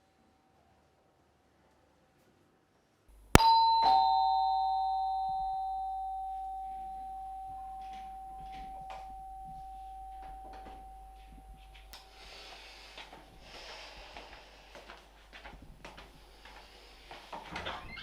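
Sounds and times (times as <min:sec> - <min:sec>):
two-tone doorbell chime: 0:03.4 - 0:12.6
faint rustling movements: 0:05.6 - 0:18.0.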